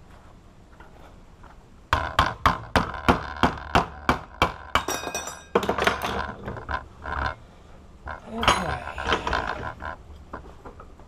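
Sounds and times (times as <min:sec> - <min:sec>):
loose metal parts clattering: 0:04.8 - 0:06.5.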